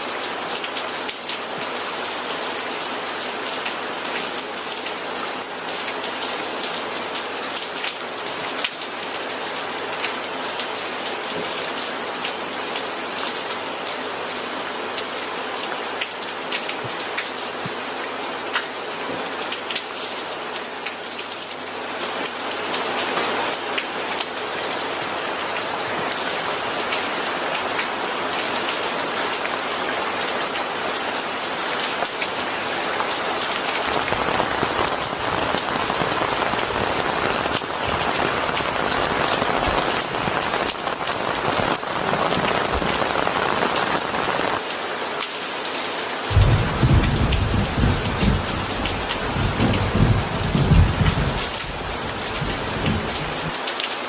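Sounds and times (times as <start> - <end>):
rain pattering: 0.0 - 54.0
low thunder rumble: 46.3 - 53.5.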